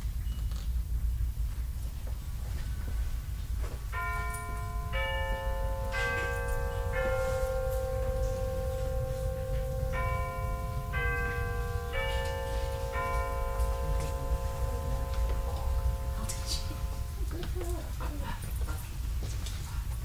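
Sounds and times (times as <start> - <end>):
low store rumble: 0.8 - 20.0
bell-like chime: 4.0 - 17.7.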